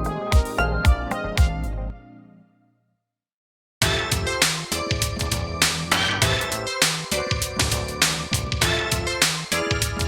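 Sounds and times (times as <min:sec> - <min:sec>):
phone ringtone melody: 0:03.8 - 0:10.0.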